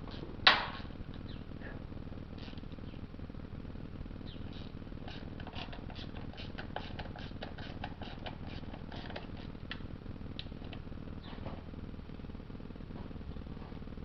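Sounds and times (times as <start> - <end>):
steady low hum: 0.0 - 14.0.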